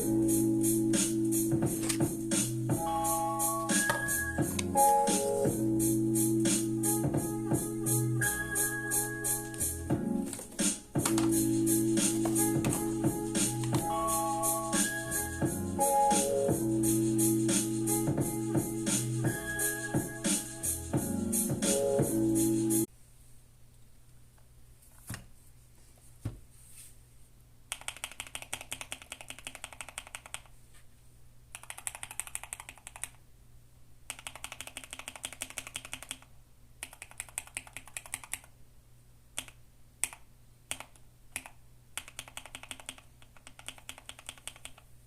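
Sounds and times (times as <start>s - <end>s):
mechanical keyboard typing: 1.8s - 2.0s, 13.6s - 14.0s, 27.7s - 30.5s, 31.5s - 33.2s, 34.1s - 38.5s, 39.4s - 44.8s.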